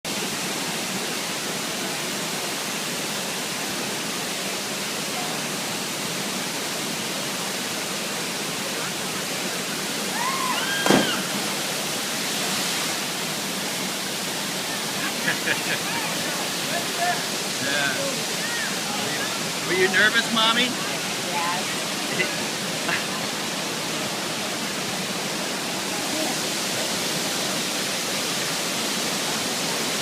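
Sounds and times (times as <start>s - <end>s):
waterfall roaring: 0.1s - 30.0s
sharp knock: 10.8s - 11.2s.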